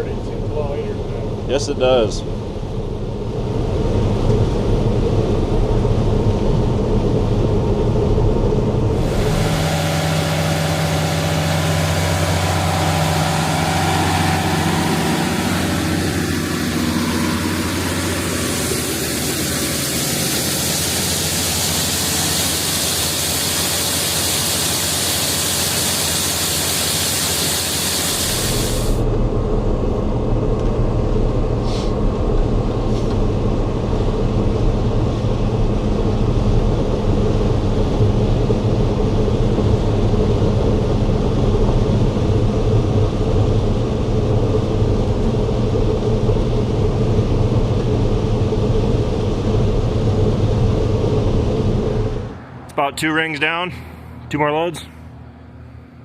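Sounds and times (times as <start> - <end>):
diesel engine droning: 0.0 - 56.0
loud hiss: 9.0 - 29.0.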